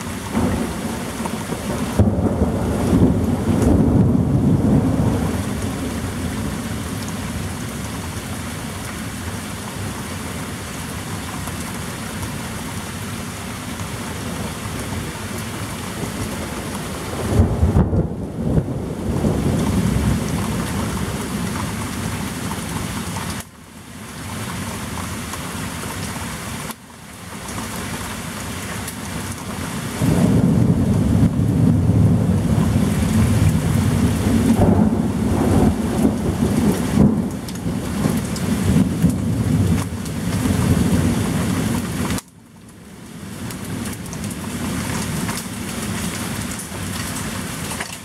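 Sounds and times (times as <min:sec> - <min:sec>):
heavy rain: 0:00.0 - 0:48.0
thunder rumbling: 0:00.3 - 0:08.0, 0:15.7 - 0:23.2, 0:30.0 - 0:42.1.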